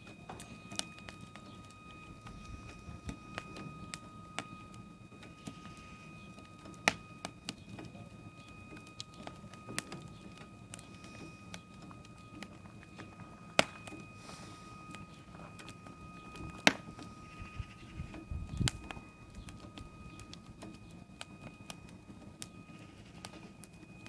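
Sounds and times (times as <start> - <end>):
faint high whine: 0.0 - 24.0
wood fire crackling and popping: 0.0 - 24.0.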